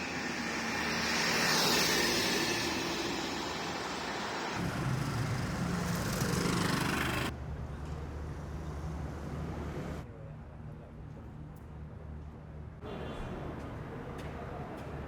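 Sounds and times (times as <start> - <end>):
low engine hum: 0.0 - 10.0
road traffic: 0.0 - 10.1.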